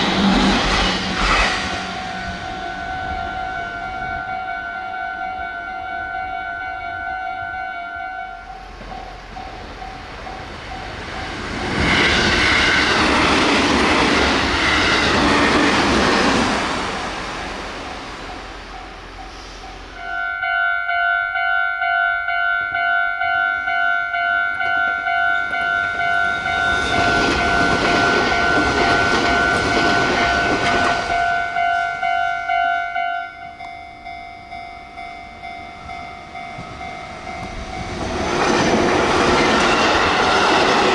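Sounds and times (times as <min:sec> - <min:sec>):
train rushing past: 0:00.0 - 0:06.7, 0:08.4 - 0:20.2, 0:24.6 - 0:33.4, 0:34.0 - 0:40.9
level-crossing bell two-tone ding: 0:01.9 - 0:11.0, 0:18.8 - 0:38.2.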